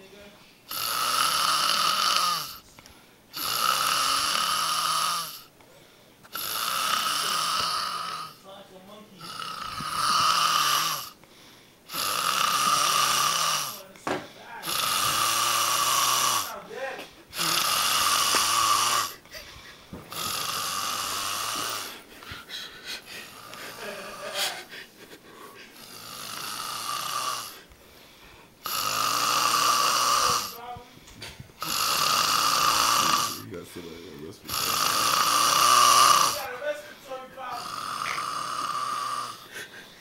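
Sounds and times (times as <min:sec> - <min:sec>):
man snoring loudly: 0:00.7 - 0:02.6, 0:03.3 - 0:05.5, 0:06.3 - 0:08.4, 0:09.2 - 0:11.2, 0:11.9 - 0:13.8, 0:14.6 - 0:16.6, 0:17.3 - 0:19.2, 0:20.1 - 0:22.0, 0:23.2 - 0:24.6, 0:25.8 - 0:27.7, 0:28.6 - 0:30.7, 0:31.6 - 0:36.6, 0:37.4 - 0:39.6.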